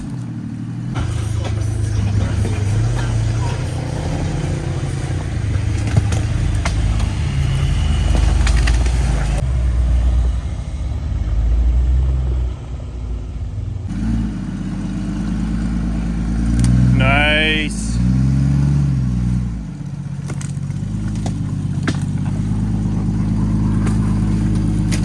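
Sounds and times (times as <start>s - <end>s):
engine running at low revs: 0.0s - 25.0s
rocks knocking and crunching: 2.2s - 9.4s, 19.9s - 25.0s.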